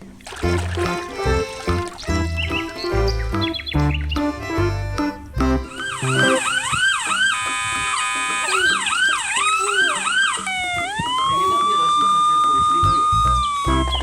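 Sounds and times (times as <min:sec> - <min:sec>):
electronic police siren: 0:05.7 - 0:14.0.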